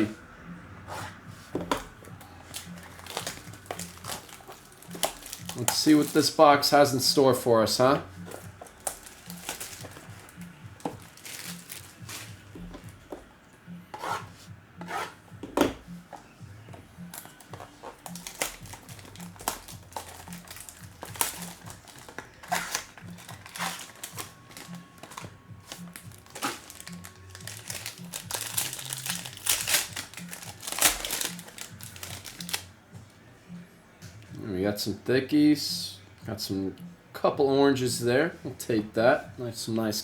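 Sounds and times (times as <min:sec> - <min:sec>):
quiet background music with beat: 0:00.0 - 0:40.0
plastic wrapping crinkling and tearing: 0:02.5 - 0:12.9, 0:17.1 - 0:32.7.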